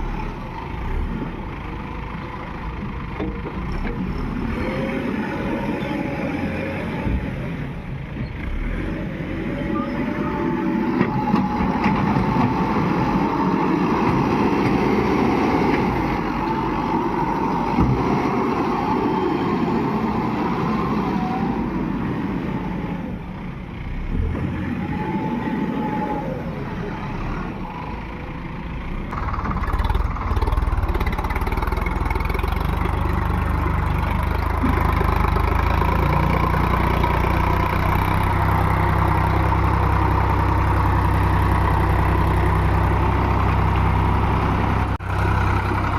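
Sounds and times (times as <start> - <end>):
heavy diesel machinery engines: 0.0 - 45.9
close low engine running: 27.8 - 45.9.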